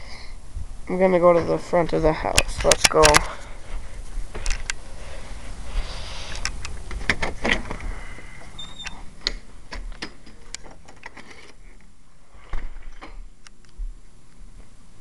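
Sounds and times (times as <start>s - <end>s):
handling noise: 1.3s - 14.6s
footsteps in a house: 3.3s - 6.0s.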